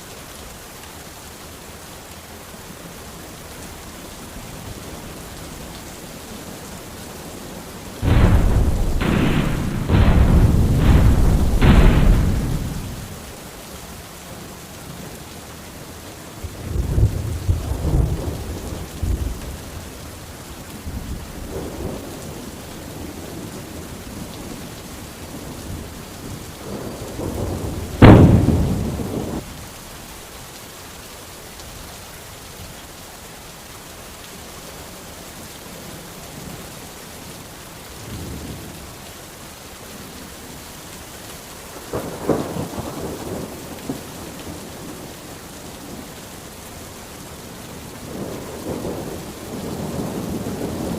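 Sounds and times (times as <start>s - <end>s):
steady rain: 0.0s - 50.9s
loud thunderclap: 8.0s - 13.3s, 26.8s - 29.5s
distant thunder rumbling: 8.0s - 13.4s, 25.4s - 29.5s.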